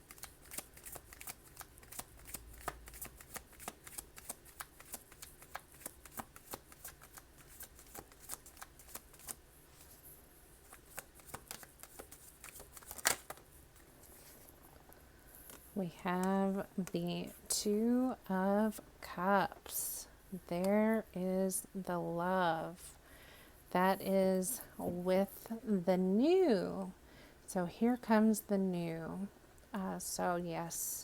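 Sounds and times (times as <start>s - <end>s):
cards being shuffled: 0.0s - 10.0s, 10.6s - 14.5s.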